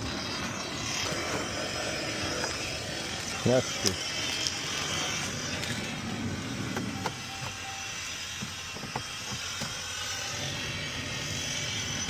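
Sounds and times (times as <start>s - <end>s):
low mechanical rumble: 0.0s - 12.0s
faint beep: 6.9s - 8.0s.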